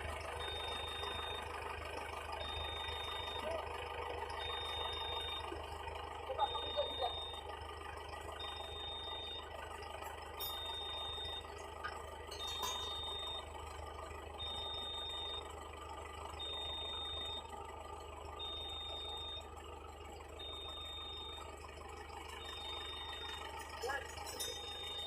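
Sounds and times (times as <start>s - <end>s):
low engine hum: 0.0s - 25.0s
vehicle warning beeper: 0.0s - 25.0s.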